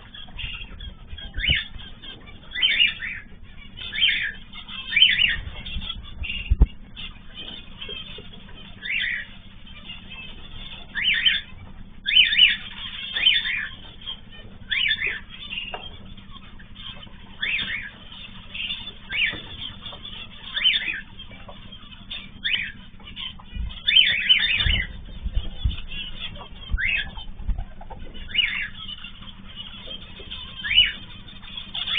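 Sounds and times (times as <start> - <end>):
cage birds calling: 0.0 - 31.9
low thumps: 23.4 - 28.3.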